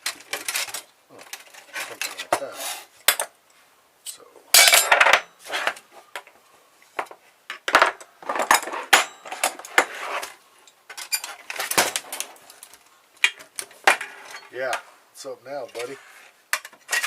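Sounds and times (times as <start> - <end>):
metal clinking and scraping: 4.5 - 5.8, 7.7 - 14.6, 15.6 - 17.0.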